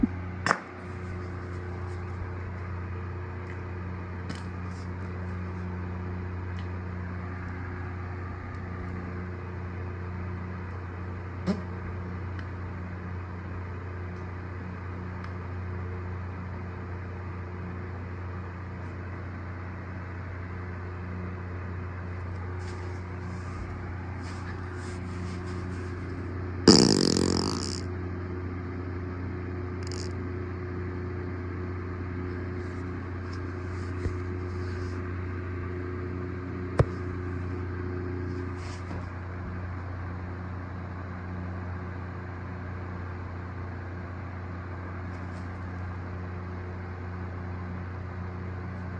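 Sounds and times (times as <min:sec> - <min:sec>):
steady low hum: 0:00.0 - 0:48.9
loud fart: 0:11.4 - 0:11.7, 0:26.6 - 0:27.9, 0:29.8 - 0:30.2.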